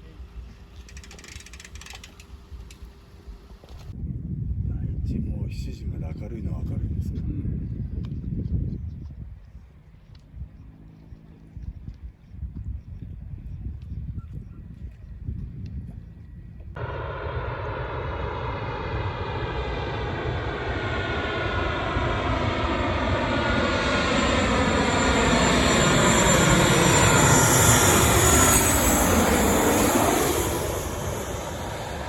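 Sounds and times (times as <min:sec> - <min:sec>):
aircraft engine passing overhead: 0:05.0 - 0:32.0.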